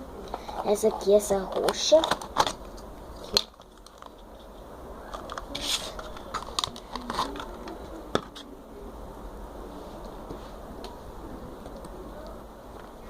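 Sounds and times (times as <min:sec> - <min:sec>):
small clicks and crackles: 0:01.5 - 0:07.9.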